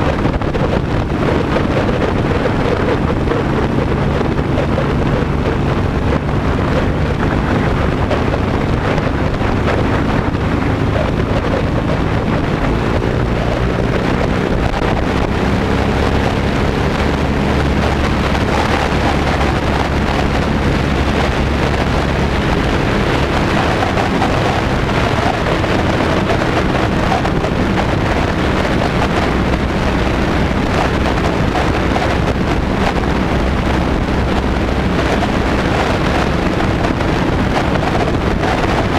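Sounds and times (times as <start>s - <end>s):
motorcycle engine running: 0.0s - 38.9s
wind buffeting microphone: 0.0s - 38.9s.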